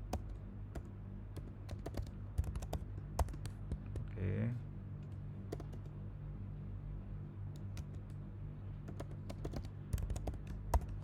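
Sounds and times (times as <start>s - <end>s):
steady low hum: 0.0s - 11.0s
computer keyboard typing: 0.1s - 4.1s, 5.0s - 5.9s, 7.6s - 8.2s, 8.9s - 11.0s.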